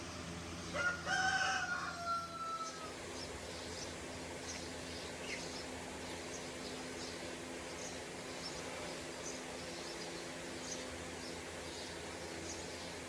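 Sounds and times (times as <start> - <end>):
rooster crowing: 0.7 - 3.0.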